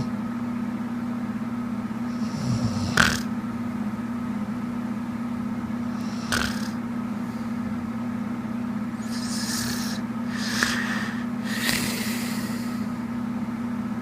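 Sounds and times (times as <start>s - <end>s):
steady low hum: 0.0s - 14.0s
woman snoring: 2.1s - 3.3s, 5.8s - 6.8s, 9.0s - 12.9s.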